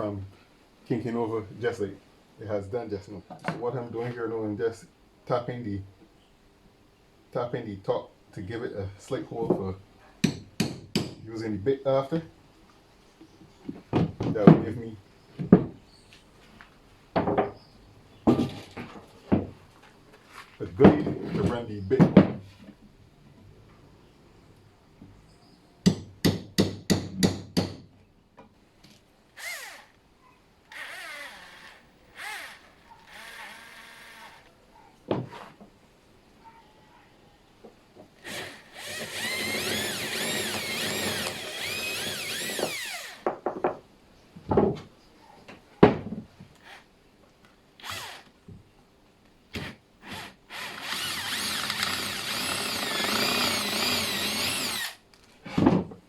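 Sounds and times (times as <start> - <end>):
knocks and handling: 13.3 - 14.8, 18.2 - 23.4, 55.2 - 56.0
power drill boring into wood: 29.4 - 29.9, 30.7 - 34.5, 38.2 - 43.2, 47.8 - 48.3, 50.0 - 55.0.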